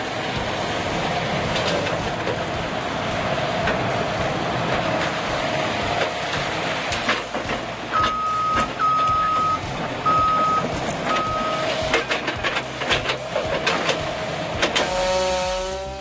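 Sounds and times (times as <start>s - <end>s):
heavy machine running: 0.0s - 16.0s
reversing alarm beeps: 7.9s - 11.9s.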